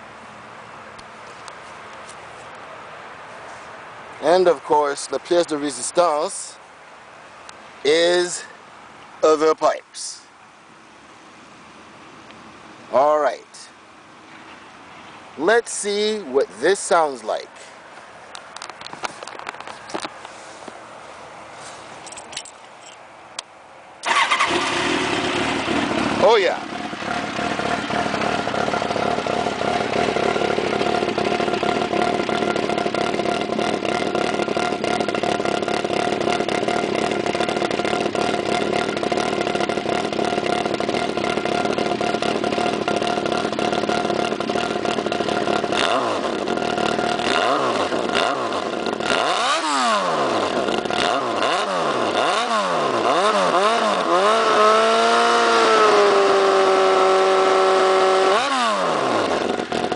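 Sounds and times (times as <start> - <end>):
motorcycle engine idling and revving: 24.0 - 59.9.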